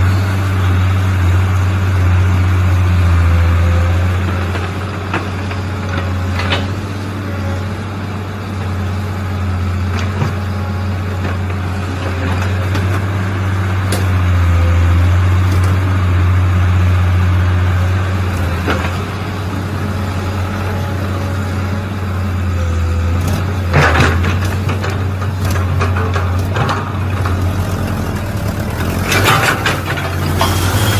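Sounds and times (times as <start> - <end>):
excavator engine running: 0.0 - 30.9.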